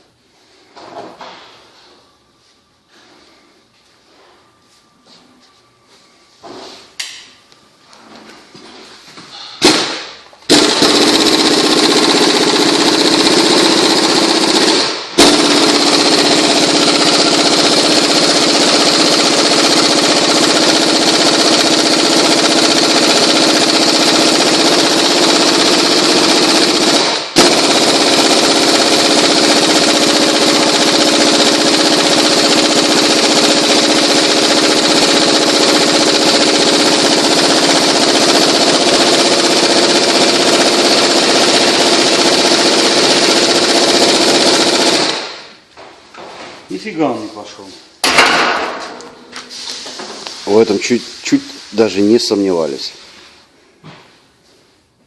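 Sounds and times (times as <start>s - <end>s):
pneumatic air tool hammering: 9.3s - 45.4s.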